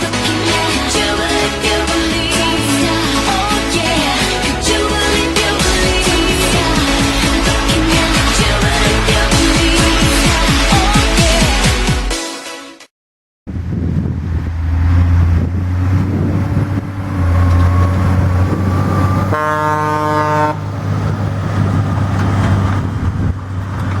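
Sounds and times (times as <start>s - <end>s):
heavy farm machinery engine: 0.0s - 11.6s, 13.5s - 24.0s
horn blast: 0.0s - 12.1s, 17.0s - 20.7s.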